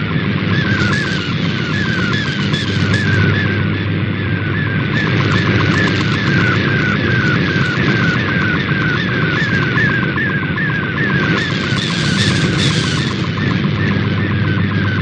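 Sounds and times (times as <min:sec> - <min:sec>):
interference hum: 0:00.0 - 0:15.0
radio static: 0:00.4 - 0:03.8, 0:04.7 - 0:10.2, 0:11.0 - 0:15.0
warbling data tone: 0:00.5 - 0:03.6, 0:04.7 - 0:15.0.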